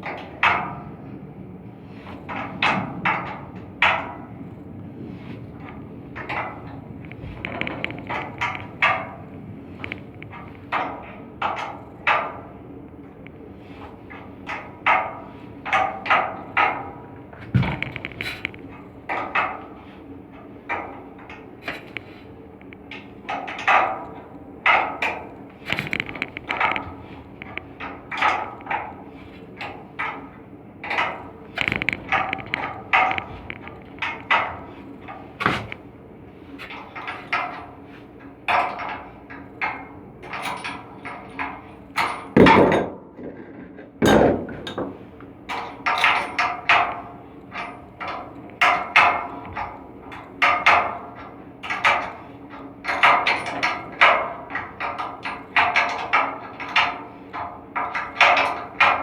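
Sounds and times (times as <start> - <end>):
tools clanging on steel: 22.7 - 35.9, 36.5 - 59.0.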